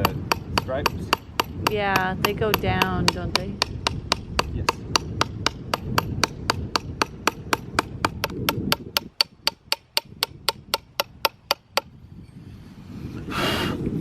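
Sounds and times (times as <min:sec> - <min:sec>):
hammer striking chisel on stone: 0:00.0 - 0:11.9
short hissing rush: 0:13.1 - 0:13.9.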